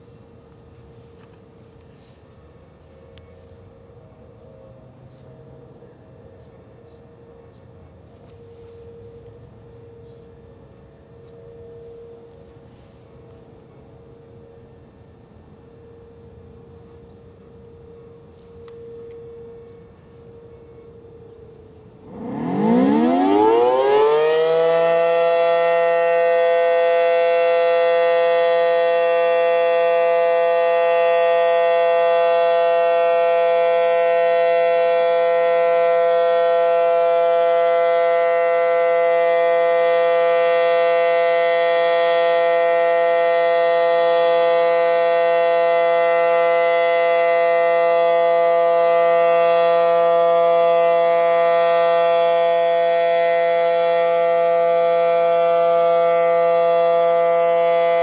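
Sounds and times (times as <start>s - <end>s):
distant siren steady tone: 0.0s - 58.0s
warning siren winding up: 21.5s - 58.0s.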